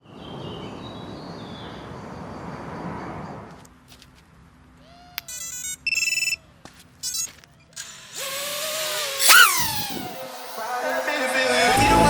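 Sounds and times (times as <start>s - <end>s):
short electronic beeps: 5.3s - 6.4s.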